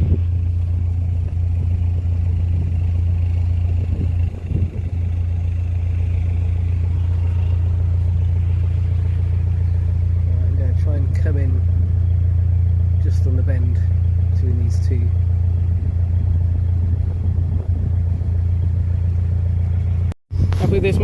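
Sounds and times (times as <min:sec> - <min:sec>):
boat diesel engine humming: 0:00.0 - 0:21.0.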